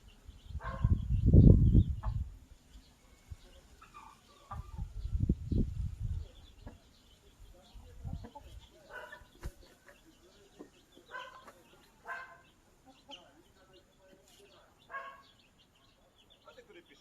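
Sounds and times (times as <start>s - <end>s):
hens clucking: 3.4s - 5.1s, 6.2s - 15.3s.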